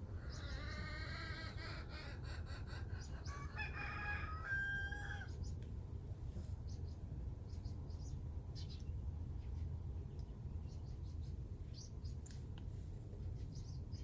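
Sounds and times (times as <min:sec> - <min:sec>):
rooster crowing: 0:03.2 - 0:05.3.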